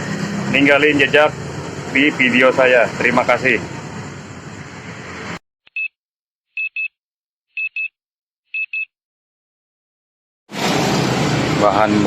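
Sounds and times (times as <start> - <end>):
high electronic beeps: 7.6 - 8.0.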